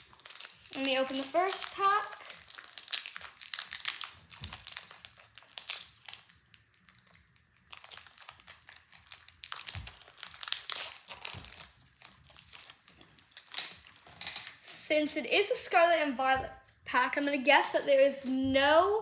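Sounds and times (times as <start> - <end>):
foil wrapper crinkling: 0.0 - 14.7.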